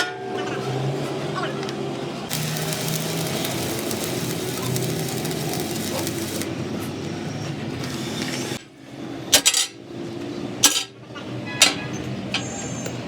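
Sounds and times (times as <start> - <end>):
steady mechanical noise: 2.1 - 8.6.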